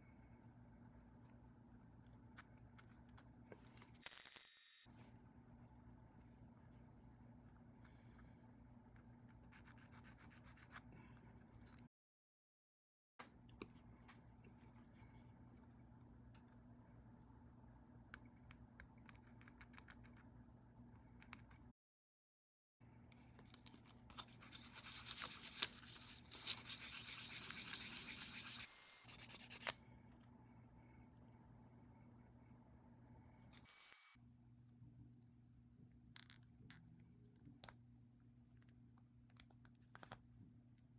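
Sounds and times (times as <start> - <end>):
faint steady hum: 0.0 - 11.9, 13.2 - 21.7, 22.8 - 40.9
light rubbing: 24.1 - 29.7.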